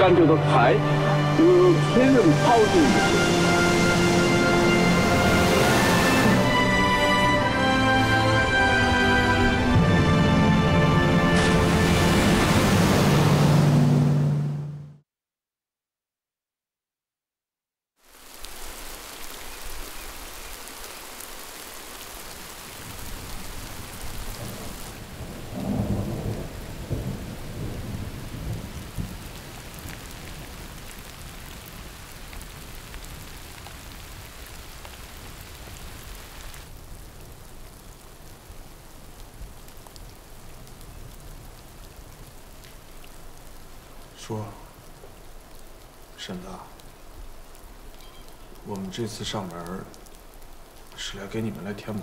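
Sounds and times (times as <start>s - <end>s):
steady rain falling: 0.0s - 14.3s, 18.0s - 52.0s
low roll of thunder: 24.2s - 30.8s.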